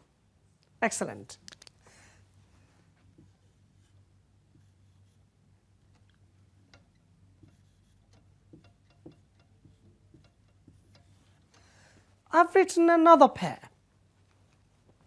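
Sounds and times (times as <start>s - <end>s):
low room hum: 0.0s - 15.0s
marker tapping on board: 6.8s - 11.4s.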